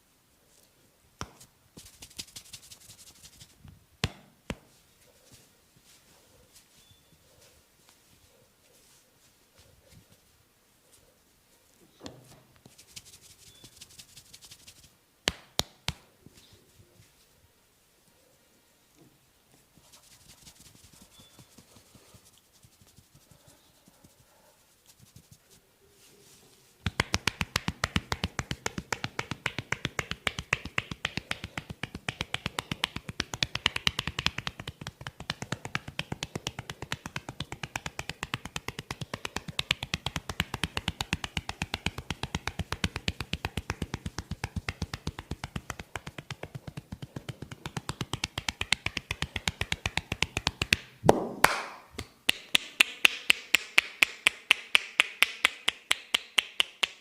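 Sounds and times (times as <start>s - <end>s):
hands tapping on a head: 1.2s - 4.8s, 12.6s - 16.1s, 26.8s - 57.0s.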